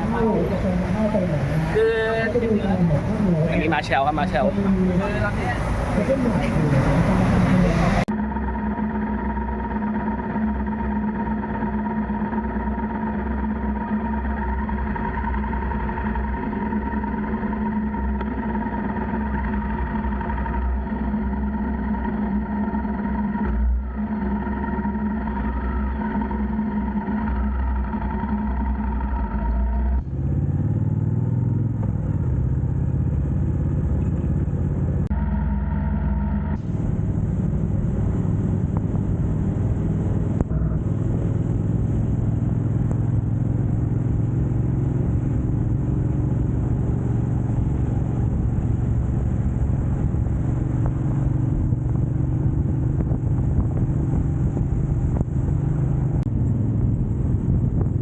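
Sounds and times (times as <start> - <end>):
motorcycle engine drone: 0.0 - 58.0
wind and road noise: 0.0 - 58.0.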